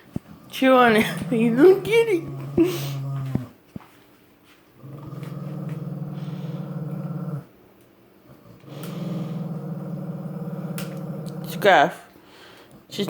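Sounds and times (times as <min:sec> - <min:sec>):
dog growling low: 0:00.4 - 0:03.6, 0:04.8 - 0:07.6, 0:08.2 - 0:11.9.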